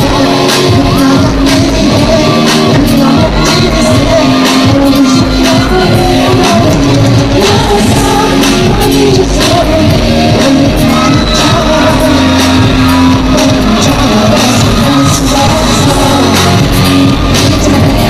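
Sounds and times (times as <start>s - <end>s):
live pop dance beat: 0.0s - 18.0s
man singing: 0.0s - 18.0s.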